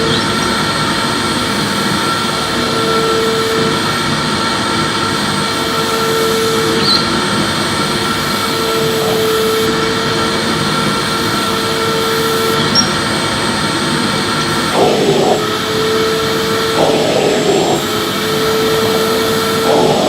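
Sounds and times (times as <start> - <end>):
vacuum cleaner running: 0.0 - 20.0
low hum: 14.7 - 20.0.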